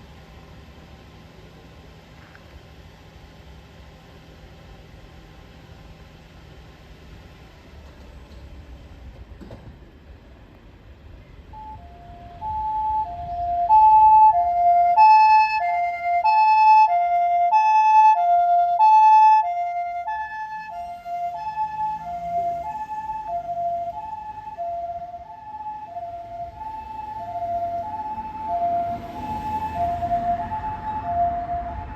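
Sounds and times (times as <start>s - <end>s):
low vehicle rumble: 0.0s - 31.9s
ambulance two-tone siren: 11.5s - 31.9s.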